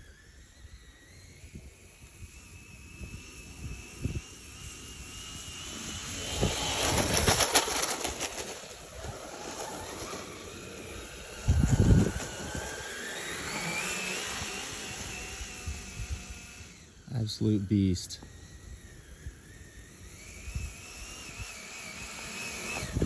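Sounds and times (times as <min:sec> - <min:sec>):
electric motor whining: 0:00.0 - 0:17.6, 0:18.2 - 0:23.0
tracks rattling over snow: 0:05.3 - 0:15.6.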